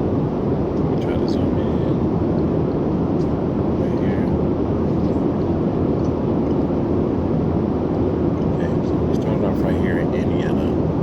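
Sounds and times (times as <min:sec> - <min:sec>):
jet engine cabin rumble: 0:00.0 - 0:11.0.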